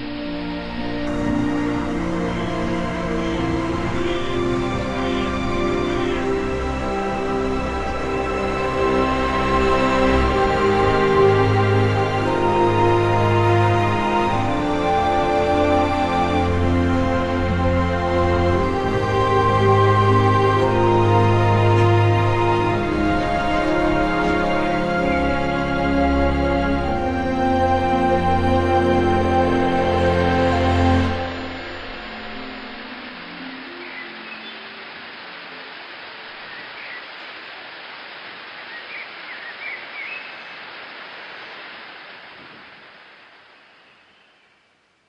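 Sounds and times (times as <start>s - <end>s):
slow sustained chords: 0.0s - 36.4s
waterfall rushing: 0.0s - 44.0s
faint bird chirps: 32.1s - 34.9s, 36.4s - 37.6s, 38.6s - 40.7s, 43.5s - 44.7s.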